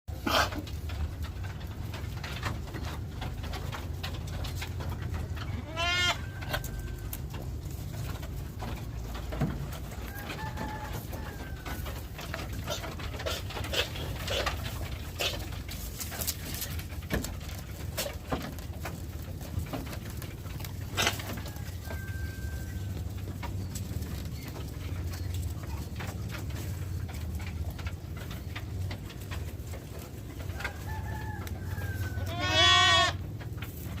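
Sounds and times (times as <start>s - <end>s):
goat bleating: 0.1s - 0.6s, 5.4s - 7.2s, 31.8s - 33.3s.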